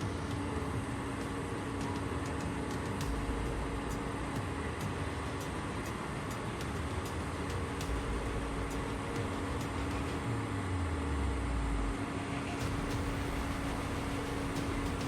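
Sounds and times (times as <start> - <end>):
diesel engine rumbling: 7.6 - 15.0.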